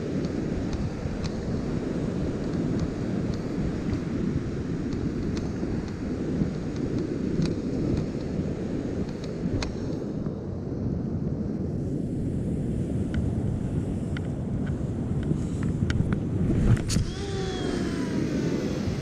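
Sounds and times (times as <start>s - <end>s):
wind buffeting microphone: 0.0s - 19.0s
heavy surf: 12.1s - 19.0s.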